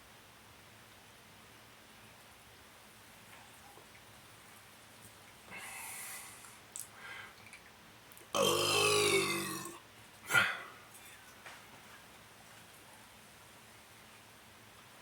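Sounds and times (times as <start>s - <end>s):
soft breathy hiss: 0.0s - 8.0s, 9.6s - 15.0s
person burping: 8.3s - 10.7s.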